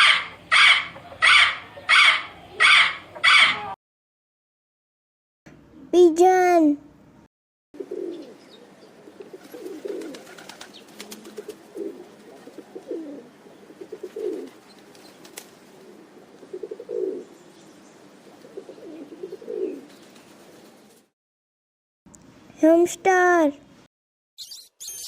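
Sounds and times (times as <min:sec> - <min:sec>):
pigeon cooing: 0:00.0 - 0:03.8, 0:07.8 - 0:17.4, 0:18.2 - 0:20.9.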